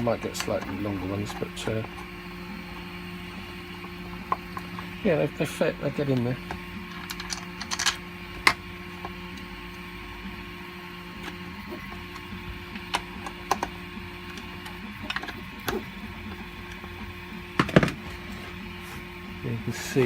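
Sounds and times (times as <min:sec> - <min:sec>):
three d printer humming: 0:00.0 - 0:20.0
plastic parts clicking: 0:06.1 - 0:08.6.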